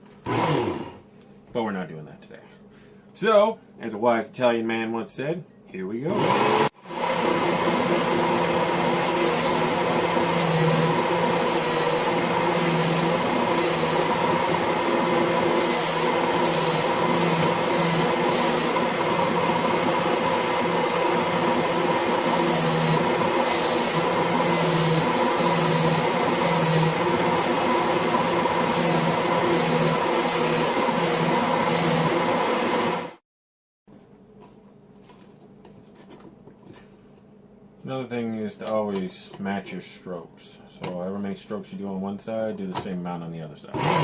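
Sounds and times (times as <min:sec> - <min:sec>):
blade grinding on abrasive belt: 0:08.9 - 0:19.4.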